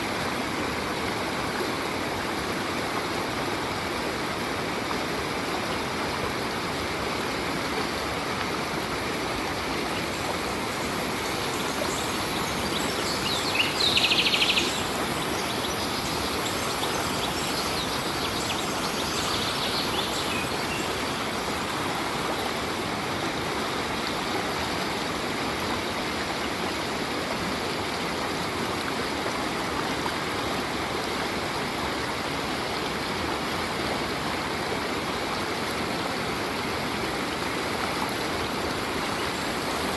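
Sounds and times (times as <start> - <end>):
stream water flowing: 0.0 - 39.9
faint bird call: 10.0 - 21.4
rapid bird trill: 10.4 - 21.3.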